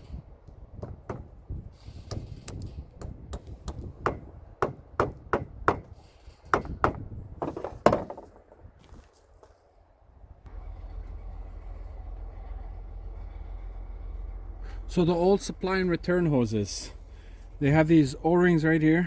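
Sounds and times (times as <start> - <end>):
sharp clicks and knocks on metal hardware: 2.0 - 7.6.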